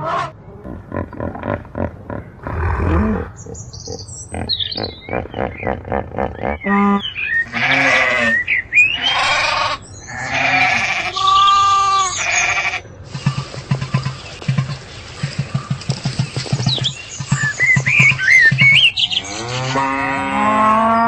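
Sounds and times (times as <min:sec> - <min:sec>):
sheep or goats bleating: 0:09.1 - 0:12.8.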